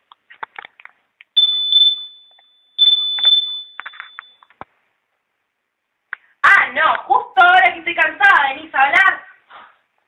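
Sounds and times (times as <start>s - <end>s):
faint clicks and rustling: 0.0s - 1.3s
electronic alarm buzzer: 1.4s - 4.2s.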